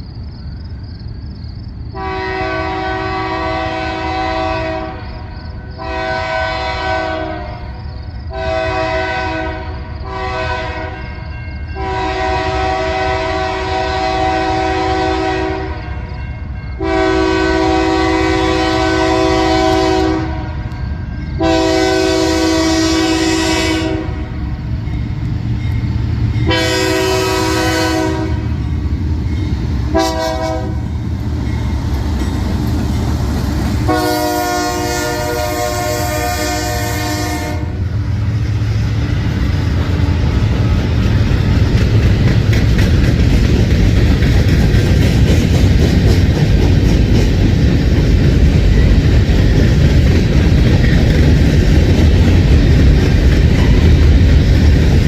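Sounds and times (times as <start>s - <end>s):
locomotive air horn blasts: 2.0s - 5.0s, 5.8s - 11.2s, 11.8s - 16.1s, 16.8s - 20.7s, 21.4s - 24.4s, 26.5s - 28.6s, 29.9s - 30.9s, 33.9s - 37.9s
freight cars clattering on rails: 24.7s - 34.0s, 38.7s - 55.0s.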